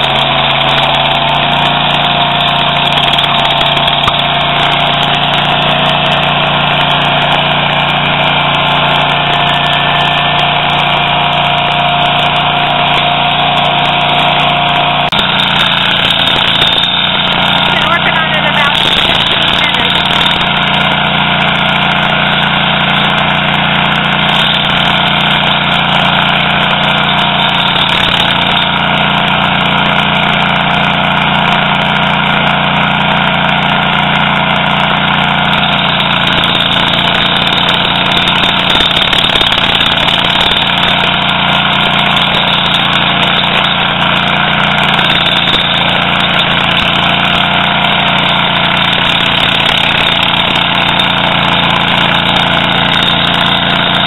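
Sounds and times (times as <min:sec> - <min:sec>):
stump grinder engine running: 0:00.0 - 0:54.0.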